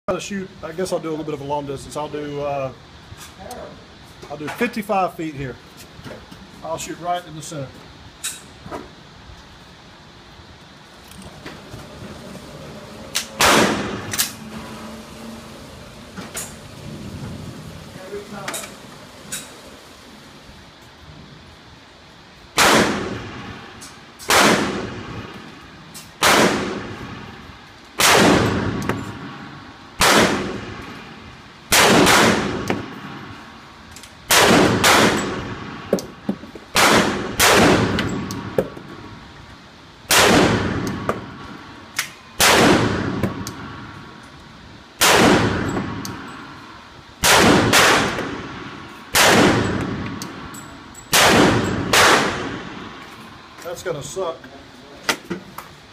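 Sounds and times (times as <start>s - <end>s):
pistol shots with ringing echo: 13.3s - 14.3s, 22.6s - 23.6s, 24.3s - 25.3s, 26.2s - 27.2s, 28.0s - 29.4s, 30.0s - 30.9s, 31.7s - 33.0s, 34.3s - 35.9s, 36.8s - 38.6s, 40.1s - 41.4s, 42.4s - 43.8s, 45.0s - 46.3s, 47.2s - 50.5s, 51.1s - 53.0s.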